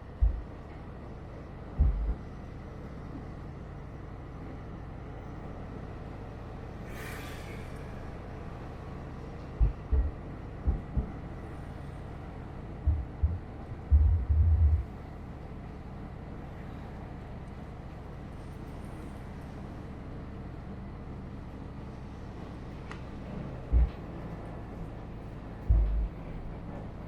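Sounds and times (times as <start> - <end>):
tram rumbling: 0.0 - 27.0.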